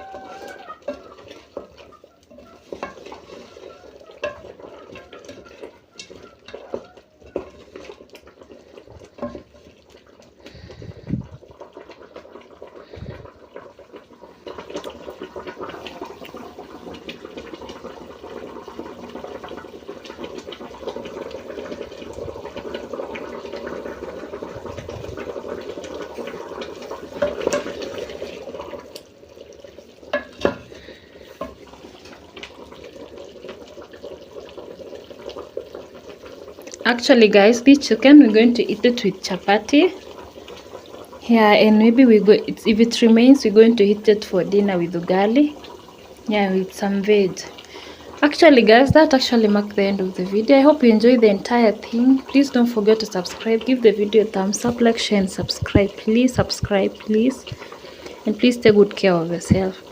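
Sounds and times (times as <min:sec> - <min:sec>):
stirring and cooking noise: 0:00.0 - 0:59.9
spoon knocking against pot: 0:04.2 - 0:04.5.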